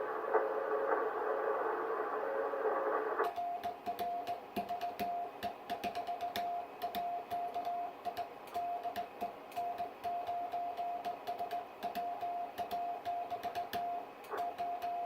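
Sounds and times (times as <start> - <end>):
radio band noise hiss: 0.0 - 15.0
sharp keying clicks: 3.3 - 14.9
morse code beeps: 9.6 - 15.0.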